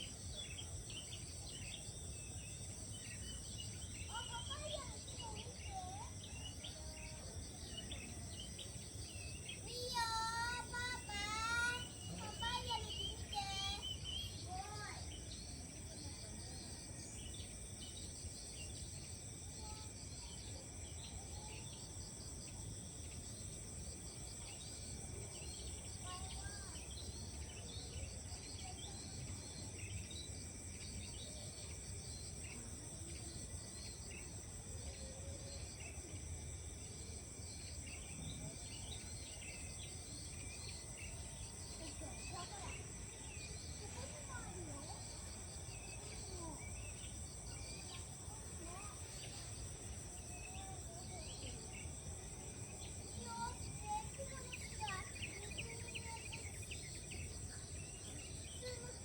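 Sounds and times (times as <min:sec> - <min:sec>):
insects droning: 0:00.0 - 0:59.0.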